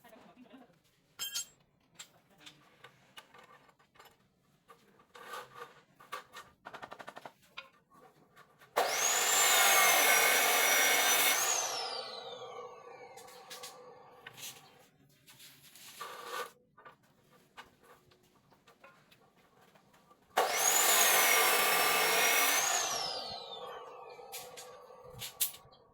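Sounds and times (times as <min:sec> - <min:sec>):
power tool whining: 0:08.8 - 0:14.3, 0:20.4 - 0:25.7.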